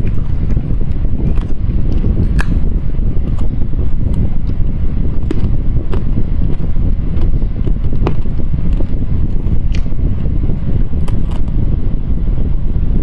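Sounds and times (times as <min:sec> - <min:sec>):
mouth clicks: 0:00.0 - 0:10.2, 0:10.9 - 0:11.6
hard candy crunching: 0:00.0 - 0:11.6
steady low rumble: 0:00.0 - 0:13.0.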